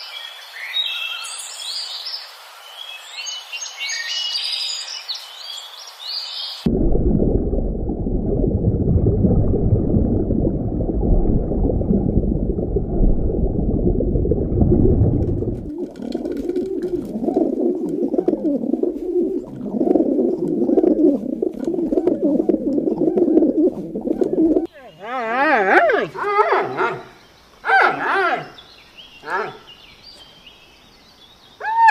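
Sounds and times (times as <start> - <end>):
dense low rumbling: 6.7 - 24.7
pigeons cooing: 15.5 - 25.2.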